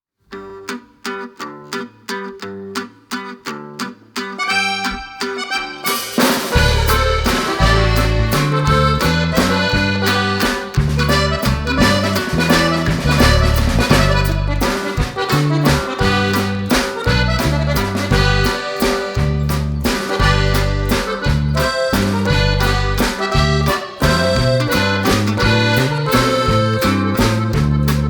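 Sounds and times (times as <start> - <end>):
accordion music: 4.3 - 28.0
steady beat: 4.4 - 28.0
bouncing bass line: 6.5 - 28.0.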